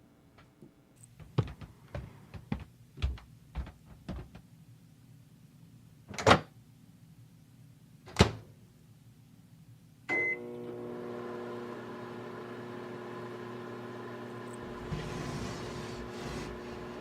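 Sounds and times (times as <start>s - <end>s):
microwave oven humming: 10.1s - 17.0s.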